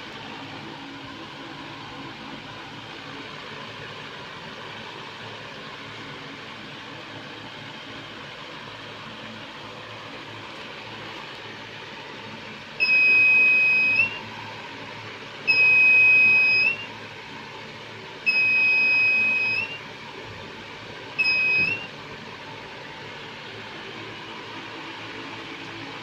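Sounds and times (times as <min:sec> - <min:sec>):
electronic alarm buzzer beeps: 0:12.8 - 0:14.2, 0:15.5 - 0:16.9, 0:18.3 - 0:19.8, 0:21.2 - 0:21.9.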